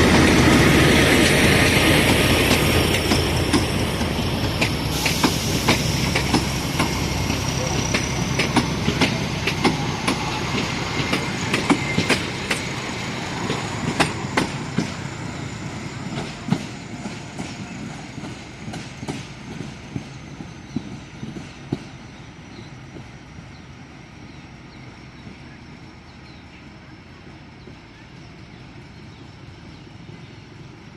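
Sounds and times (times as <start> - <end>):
train wheels clacking over rail joints: 0.0 - 15.4, 16.0 - 22.0.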